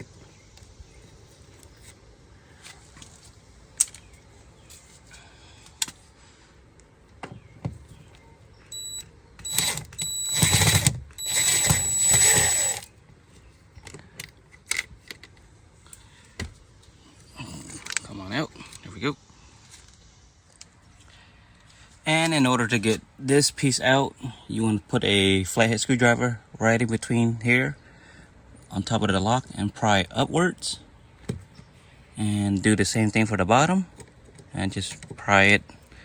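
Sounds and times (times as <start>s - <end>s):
thin high whine: 8.7s - 12.9s
loud rasping noise: 9.4s - 12.9s.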